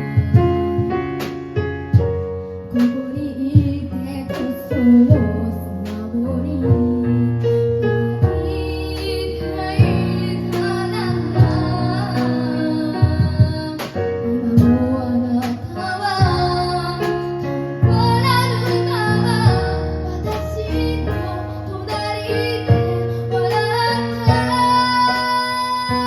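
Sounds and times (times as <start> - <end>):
drum hits: 0.0 - 2.2, 9.8 - 22.1, 22.7 - 26.0
keyboard: 0.0 - 26.0
girl singing: 2.7 - 26.0.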